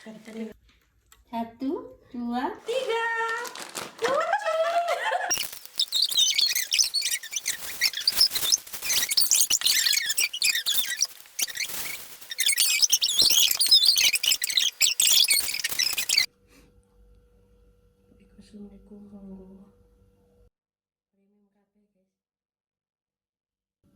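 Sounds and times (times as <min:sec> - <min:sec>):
small birds chirping chorus: 0:05.3 - 0:16.3.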